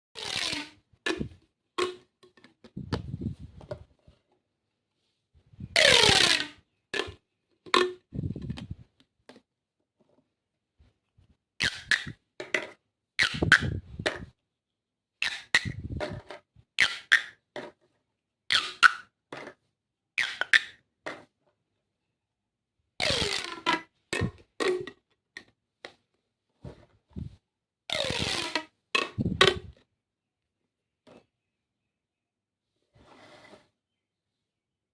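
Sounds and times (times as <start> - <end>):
plastic tubes hollow pops: 0.2 - 3.1, 6.2 - 8.6, 23.3 - 26.0.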